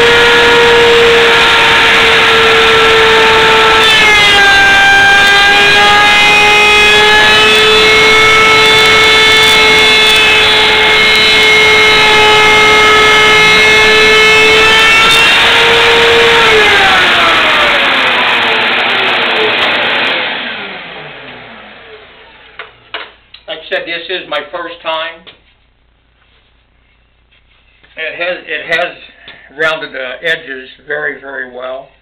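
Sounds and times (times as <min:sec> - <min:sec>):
router motor spinning down: 0:00.0 - 0:22.8
router whining at full speed: 0:00.0 - 0:22.8.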